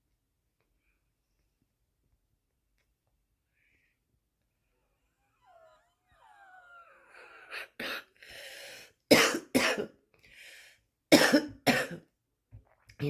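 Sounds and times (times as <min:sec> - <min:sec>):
rasping wheezing breaths: 0:04.7 - 0:09.1
woman coughing: 0:09.1 - 0:09.9, 0:11.1 - 0:12.1.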